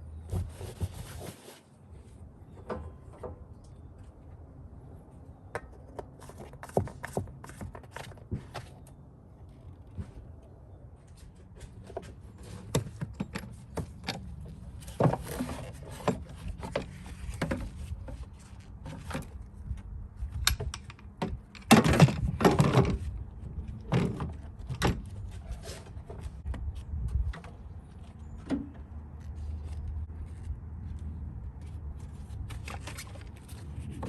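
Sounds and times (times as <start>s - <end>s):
tool handling clicks and clatters: 20.3s - 23.0s.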